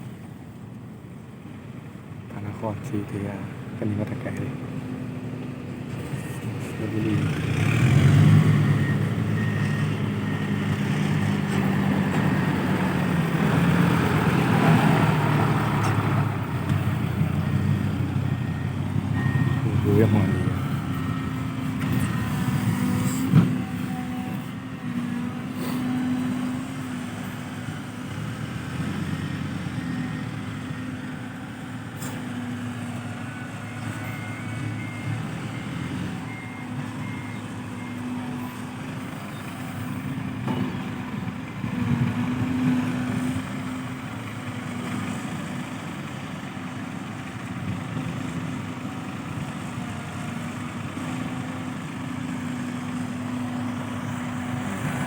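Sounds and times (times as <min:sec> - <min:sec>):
diesel trucks running: 0:00.0 - 0:55.0
reversing beeper short beeps: 0:19.2 - 0:20.9.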